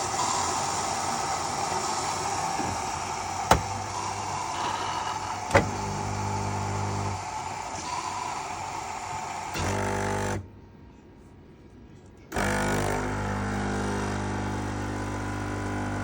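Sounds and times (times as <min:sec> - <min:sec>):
coffee machine hissing: 0:00.0 - 0:10.4, 0:12.4 - 0:16.0.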